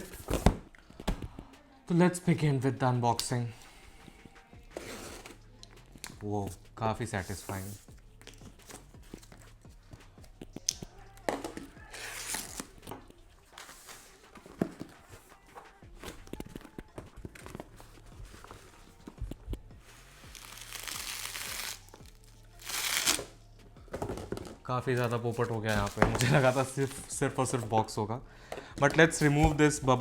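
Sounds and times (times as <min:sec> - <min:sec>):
packaging ripping and rustling: 0:20.2 - 0:22.0, 0:22.6 - 0:23.3.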